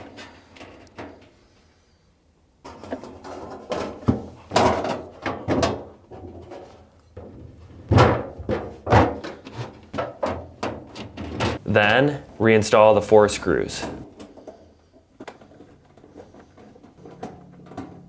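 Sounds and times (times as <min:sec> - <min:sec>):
plastic knocking and clattering: 0:02.7 - 0:11.6.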